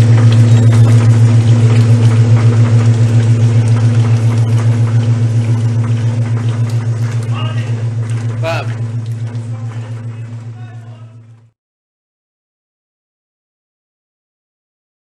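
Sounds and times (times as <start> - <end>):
washing machine motor hum: 0.0 - 11.6.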